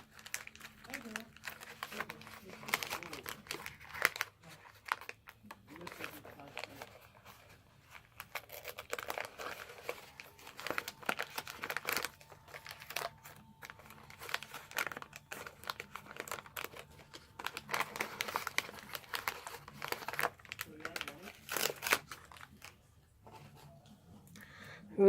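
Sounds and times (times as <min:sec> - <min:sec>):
cards rustling: 0:00.0 - 0:23.7
wax paper wrappers crinkling: 0:00.0 - 0:24.0.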